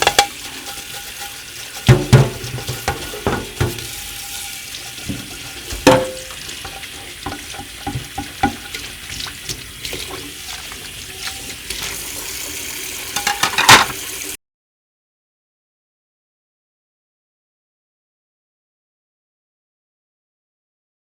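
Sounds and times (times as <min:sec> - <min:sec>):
water running: 0:00.0 - 0:14.4
knocks and clinks: 0:13.2 - 0:14.0.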